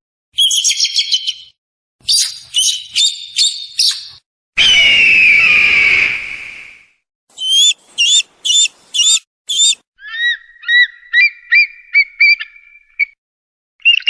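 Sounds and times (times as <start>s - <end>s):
eagle calling: 2.1s - 5.0s, 7.3s - 13.2s.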